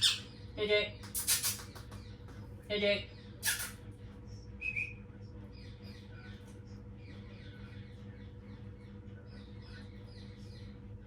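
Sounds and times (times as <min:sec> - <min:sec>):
parrot squeaky chirps: 0:00.0 - 0:00.4, 0:01.2 - 0:01.7, 0:03.4 - 0:03.8.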